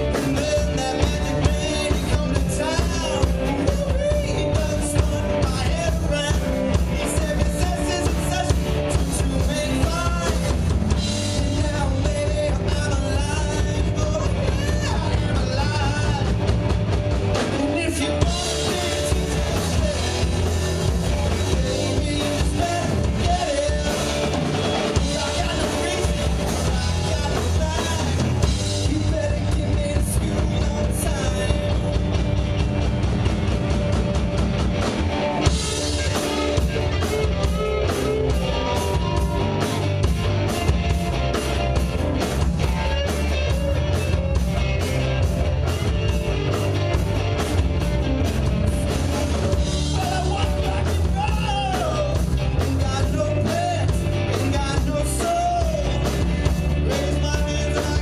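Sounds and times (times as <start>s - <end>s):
person singing: 0.0s - 16.5s, 17.4s - 31.8s, 48.8s - 58.0s
live rock band playing: 0.0s - 58.0s.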